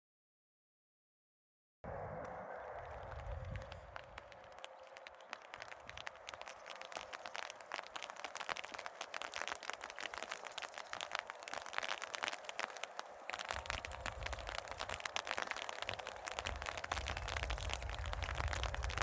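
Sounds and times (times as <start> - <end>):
low rumble: 1.9 - 4.5
rain pattering: 1.9 - 19.0.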